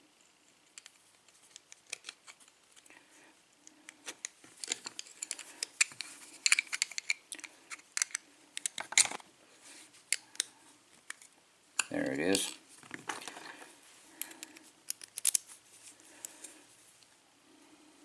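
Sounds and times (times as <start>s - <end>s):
metal tool clicking and scraping: 14.9s - 15.5s.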